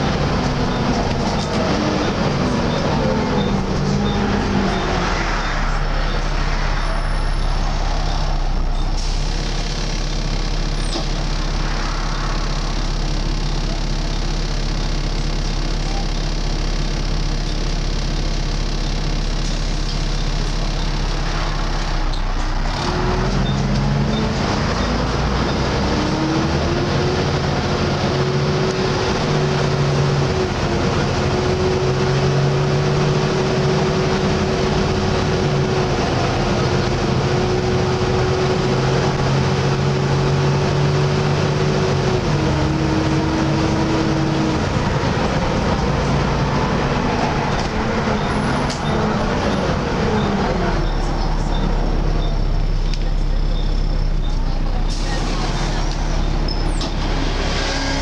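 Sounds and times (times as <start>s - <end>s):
bus engine whining under load: 0.0s - 58.0s.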